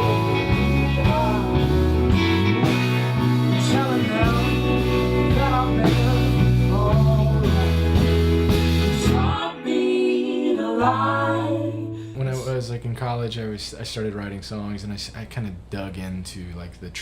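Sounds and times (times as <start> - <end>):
person singing: 0.0 - 8.2, 8.9 - 12.5
bass notes: 0.0 - 9.5
country-rock band playing: 0.0 - 9.6.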